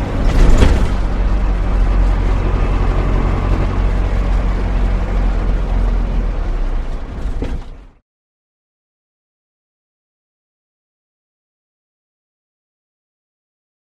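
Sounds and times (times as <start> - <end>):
loud clatter: 0.0 - 8.0
van engine humming: 0.0 - 8.0.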